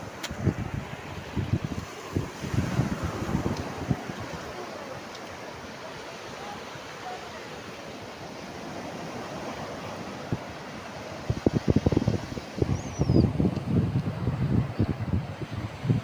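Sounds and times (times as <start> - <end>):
wind buffeting microphone: 0.0 - 4.8, 8.6 - 16.0
sea surf: 0.0 - 16.0
wind: 0.0 - 16.0.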